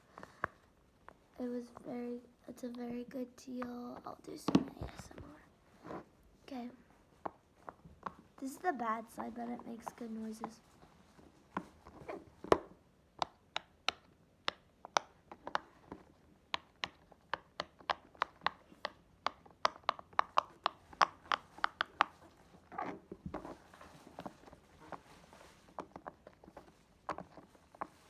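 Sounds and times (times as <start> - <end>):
rubbing sound of handling: 21.4 - 28.0.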